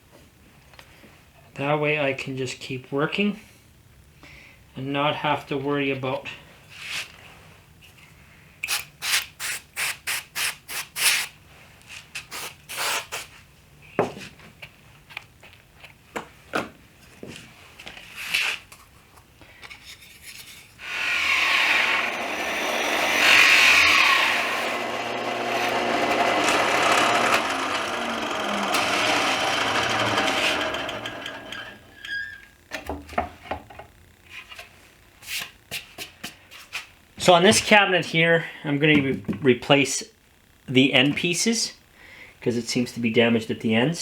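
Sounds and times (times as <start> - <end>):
low hum: 20.8 - 31.9
power tool running: 20.8 - 32.1.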